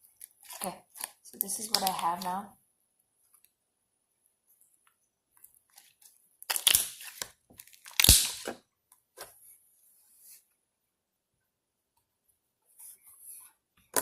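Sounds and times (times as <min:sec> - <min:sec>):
slime being squished: 0:00.2 - 0:02.4, 0:05.8 - 0:08.6.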